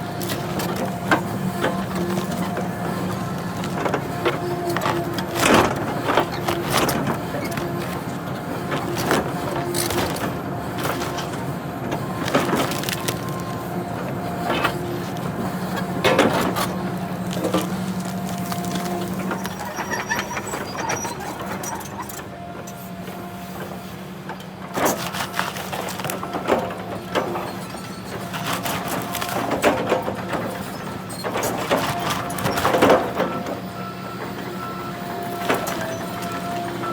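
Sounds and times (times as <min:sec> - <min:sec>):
wood cracking and splintering: 0:00.0 - 0:20.7, 0:24.8 - 0:30.4
excavator engine and hydraulics: 0:00.0 - 0:36.9.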